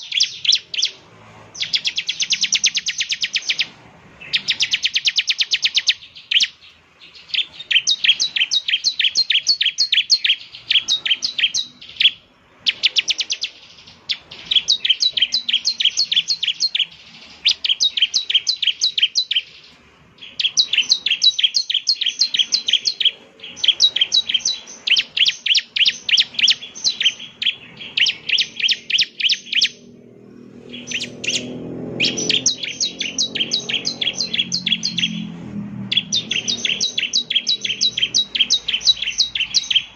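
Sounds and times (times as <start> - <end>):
bird chirping in fast runs: 0.0 - 1.0, 1.6 - 39.9
faint low rumble: 29.7 - 39.9.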